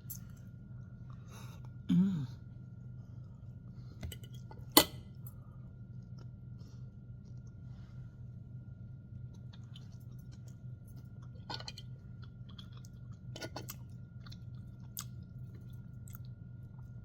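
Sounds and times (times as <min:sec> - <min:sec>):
steady low hum: 0:00.0 - 0:17.0
person chewing: 0:09.3 - 0:16.9.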